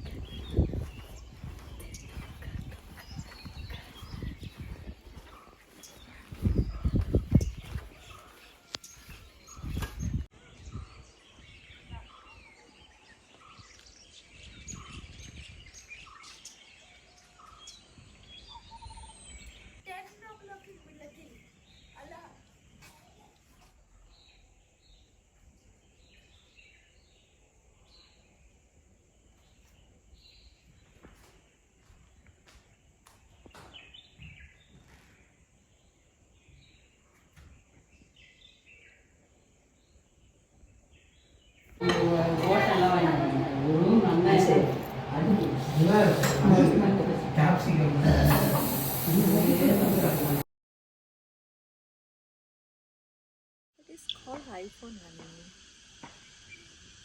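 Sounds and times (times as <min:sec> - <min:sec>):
birds chirping: 0:00.0 - 0:19.8, 0:41.0 - 0:50.4
bird chirps: 0:54.0 - 0:54.5.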